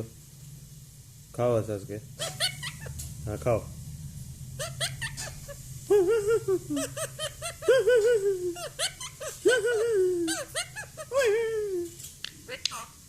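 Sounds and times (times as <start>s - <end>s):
parrot imitating laughter: 2.2s - 2.9s, 4.6s - 12.9s.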